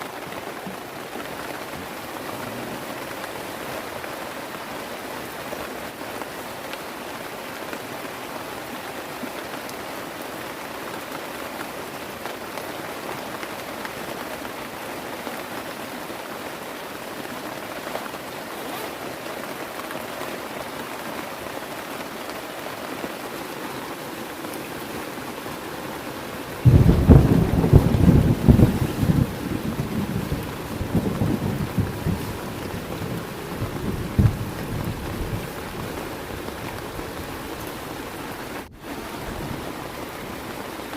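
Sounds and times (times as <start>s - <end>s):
heavy rain falling: 0.0s - 40.9s
raindrop ticks: 26.6s - 37.8s.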